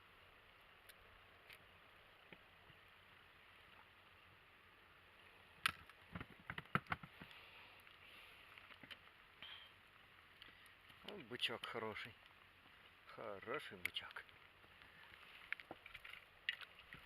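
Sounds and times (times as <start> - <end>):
clatter of knocks and taps: 6.1 - 7.3.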